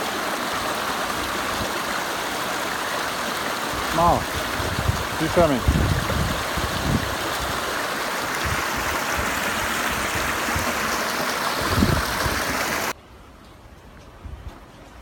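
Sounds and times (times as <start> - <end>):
rushing stream water: 0.0 - 13.0
quiet outdoor background: 0.0 - 15.0.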